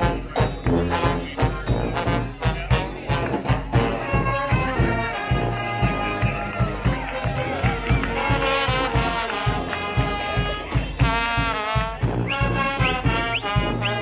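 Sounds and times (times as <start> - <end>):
steady drum beat: 0.0 - 14.0
trombones and trumpets: 0.0 - 14.0.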